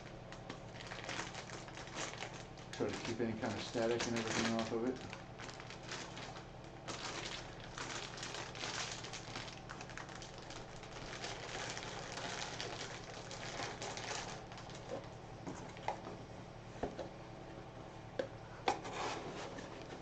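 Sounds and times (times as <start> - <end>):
plastic bag and box crinkling: 0.0 - 15.9.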